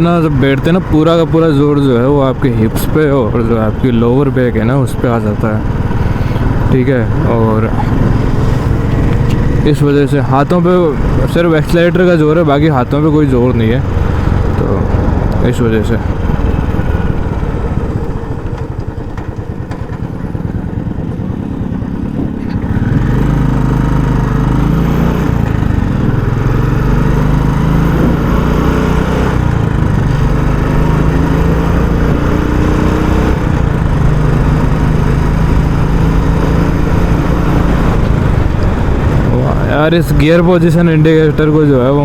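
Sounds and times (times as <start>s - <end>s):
motorcycle engine thumping: 4.9s - 11.6s, 13.8s - 24.1s, 29.3s - 39.8s.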